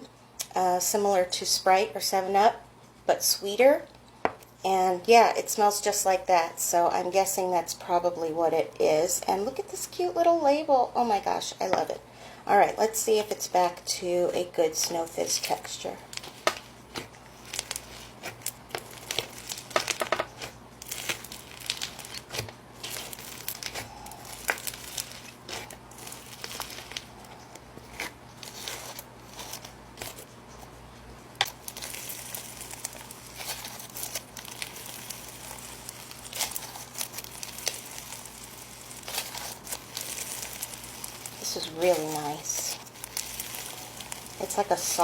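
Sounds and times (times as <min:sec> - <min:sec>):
slime crackling pops: 0:16.1 - 0:27.1, 0:31.4 - 0:44.5.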